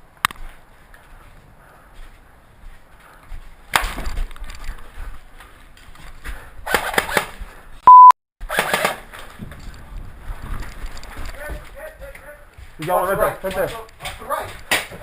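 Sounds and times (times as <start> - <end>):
censor bleep: 7.8 - 8.2.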